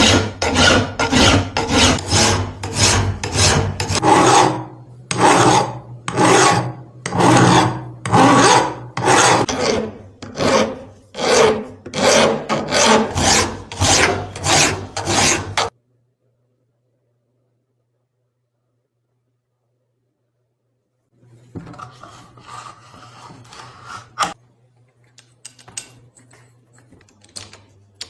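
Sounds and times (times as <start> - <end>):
hand file strokes: 0.0 - 15.7, 21.8 - 24.4.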